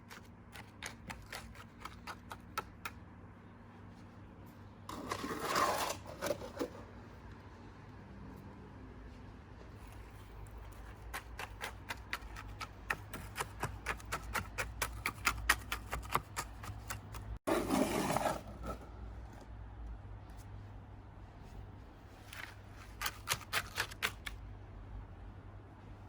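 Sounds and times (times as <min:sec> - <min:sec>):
trowel scraping wet cement: 0:04.9 - 0:06.6, 0:10.6 - 0:18.8.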